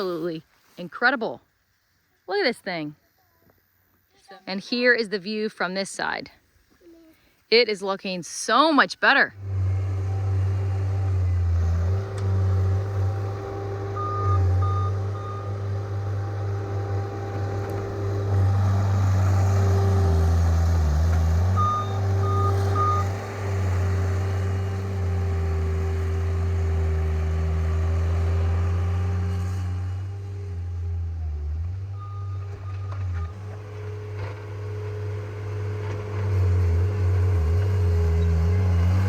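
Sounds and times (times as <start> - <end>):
diesel engine running: 9.3 - 39.0
reverse alarm beeps: 14.0 - 15.6, 21.6 - 23.1, 32.0 - 33.4.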